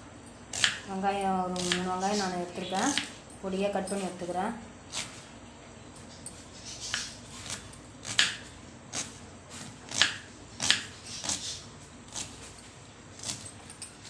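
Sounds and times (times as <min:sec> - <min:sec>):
knife cutting onions: 0:00.4 - 0:03.2, 0:04.9 - 0:05.3, 0:06.0 - 0:14.0.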